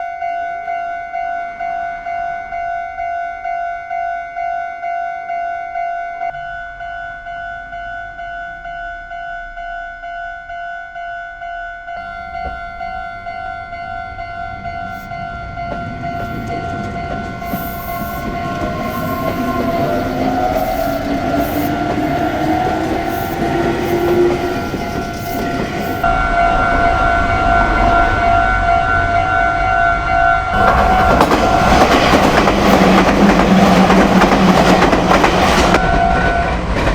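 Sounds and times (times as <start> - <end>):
level crossing alarm ringing: 11.9 - 27.6
train motor whine: 12.0 - 28.2
wheels clattering on rails: 14.4 - 26.1, 30.6 - 36.9.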